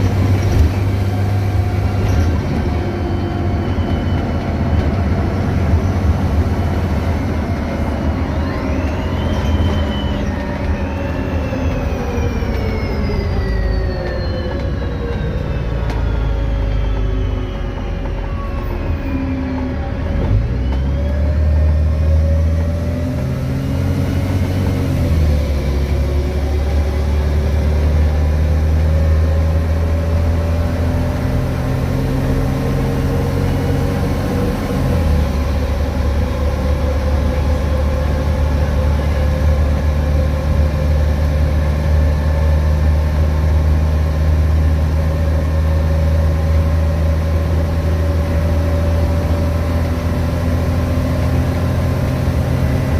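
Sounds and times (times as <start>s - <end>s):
bus engine changing gear: 0.0s - 52.9s.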